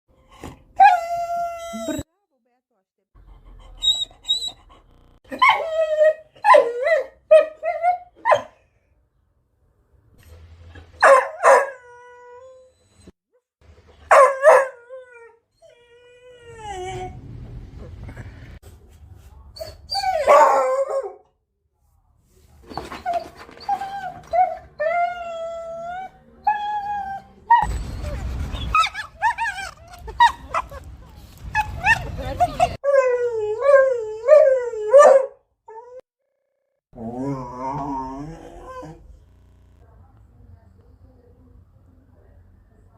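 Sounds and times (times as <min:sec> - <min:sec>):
dog yipping and whining: 0:00.8 - 0:02.1, 0:03.6 - 0:08.6, 0:10.7 - 0:13.2, 0:14.1 - 0:17.2, 0:19.6 - 0:21.2, 0:22.7 - 0:30.8, 0:31.5 - 0:36.0.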